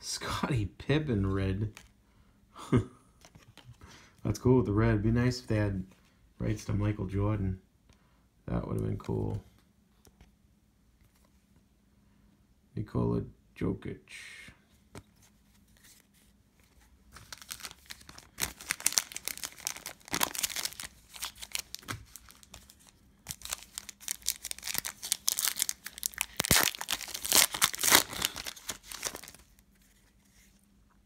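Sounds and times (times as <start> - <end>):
plastic wrapper crinkling and tearing: 17.1 - 29.6.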